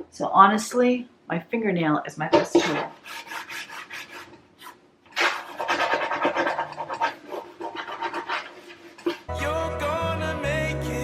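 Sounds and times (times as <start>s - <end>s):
fingernail scratching wood: 2.7s - 9.2s.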